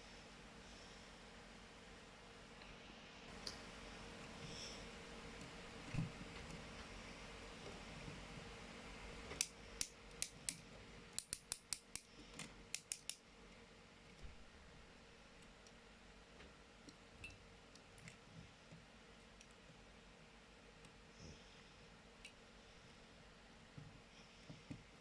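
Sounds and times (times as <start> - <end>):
plastic toy clicking: 12.8 - 13.2.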